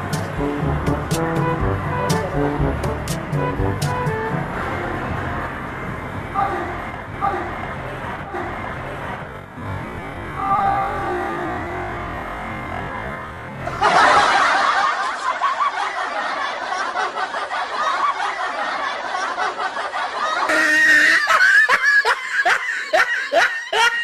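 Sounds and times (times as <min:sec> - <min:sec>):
person laughing: 0:20.4 - 0:24.0.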